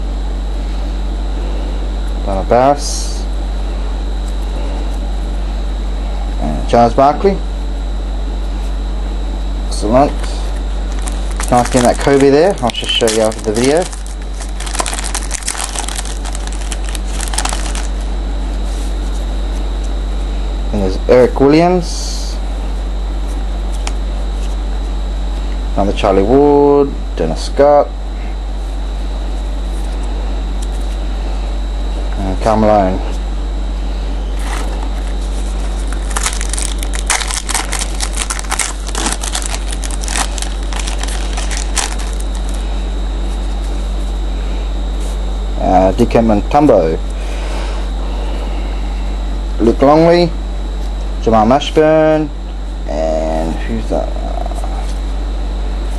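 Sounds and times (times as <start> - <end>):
steady low hum: 0.0 - 55.9
card pack crinkling and rustling: 10.9 - 18.0, 34.4 - 42.6.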